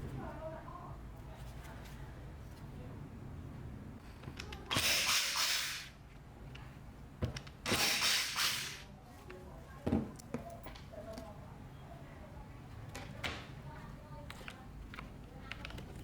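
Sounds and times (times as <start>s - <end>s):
short hissing sprays: 4.7s - 6.0s, 7.7s - 8.9s.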